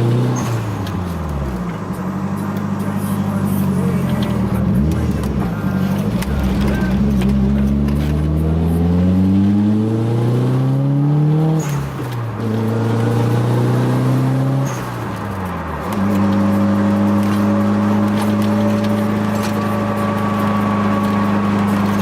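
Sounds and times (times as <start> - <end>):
car engine accelerating through gears: 0.0 - 22.0.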